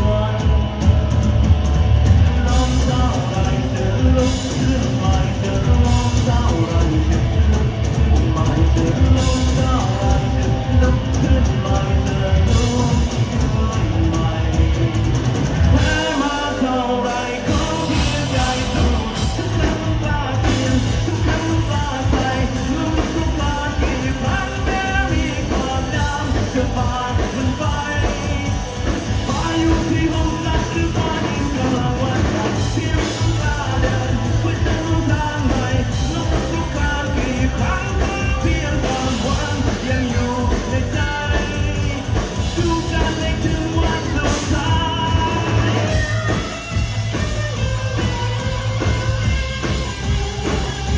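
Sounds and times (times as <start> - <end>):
person singing: 0.0 - 46.7
rock band playing: 0.0 - 50.9.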